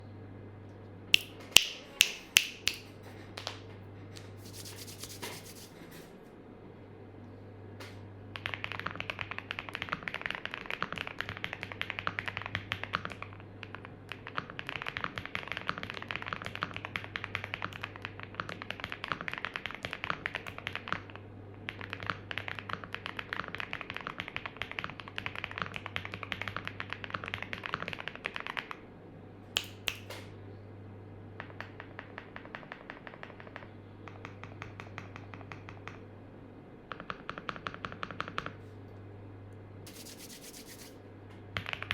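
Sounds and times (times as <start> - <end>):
fast typing on mechanical keyboard: 8.4 - 28.7, 31.7 - 33.7.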